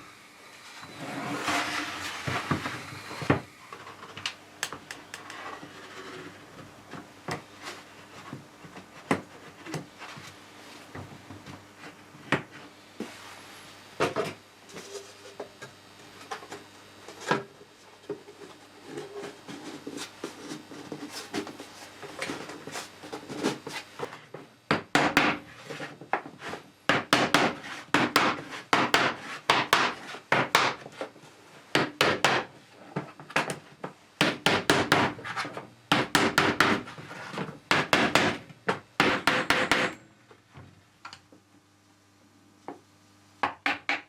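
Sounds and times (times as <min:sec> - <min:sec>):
hand tool scraping strokes: 0:00.7 - 0:03.3.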